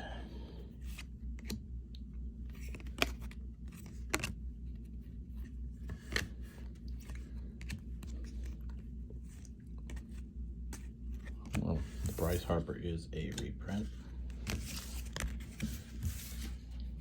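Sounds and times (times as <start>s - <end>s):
low steady hum: 0.0s - 17.0s
cardboard cards clicking and sliding: 2.5s - 4.8s, 5.4s - 12.6s, 13.2s - 17.0s.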